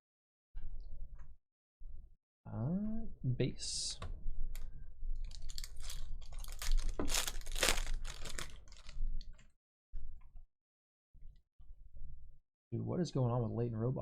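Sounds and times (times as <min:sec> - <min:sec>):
foil wrapper crinkling: 0:05.2 - 0:09.4.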